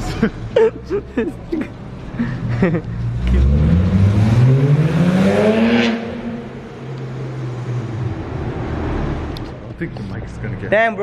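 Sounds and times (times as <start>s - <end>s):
car accelerating hard: 3.0s - 9.6s.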